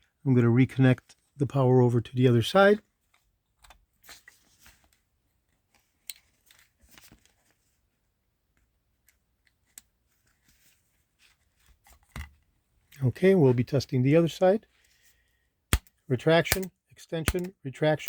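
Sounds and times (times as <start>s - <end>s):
sharp click: 15.7s - 17.5s.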